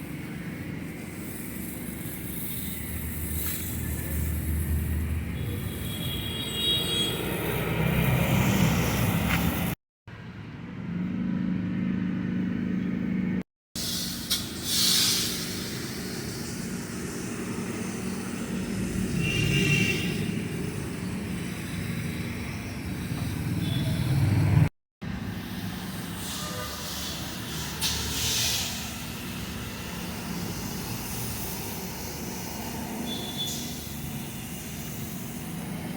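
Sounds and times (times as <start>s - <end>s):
engine running: 0.0s - 35.9s
short hiss: 13.8s - 17.2s, 26.1s - 29.4s.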